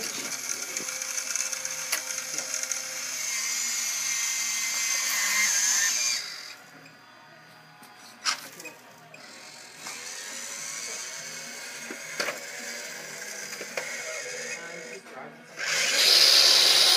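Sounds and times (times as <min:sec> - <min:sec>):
motor clicks: 0:00.0 - 0:03.2
toy gear motors whining: 0:00.0 - 0:06.9, 0:08.0 - 0:16.9.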